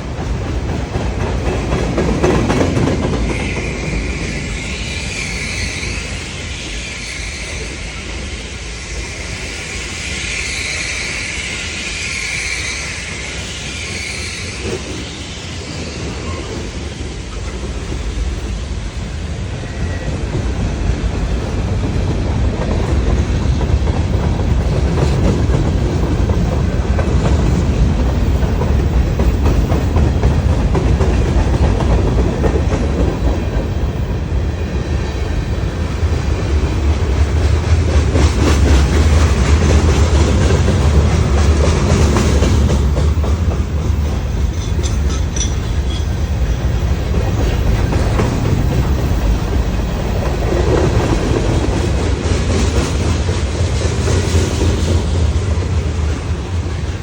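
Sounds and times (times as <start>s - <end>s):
train rumbling past: 0.0s - 57.0s
wheels clicking over rail joints: 0.1s - 3.8s, 36.1s - 55.0s.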